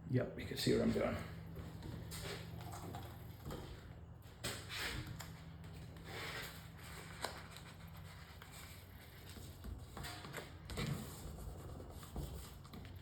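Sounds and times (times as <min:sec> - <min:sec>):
hands rubbing vinyl decal: 0:04.7 - 0:13.0.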